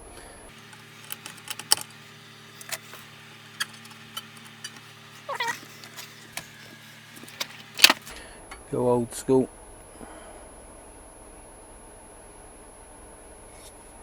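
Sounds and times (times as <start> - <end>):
faint steady hum: 0.5 - 8.1
cat meowing: 5.3 - 5.6.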